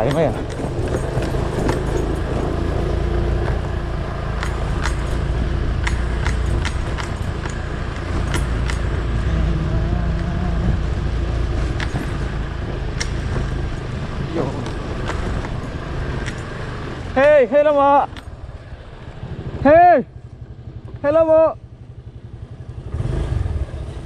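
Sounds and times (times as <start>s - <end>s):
sharp clicks and knocks: 0.0s - 2.7s, 3.3s - 9.3s, 11.4s - 17.4s
low engine rumble: 0.0s - 22.8s.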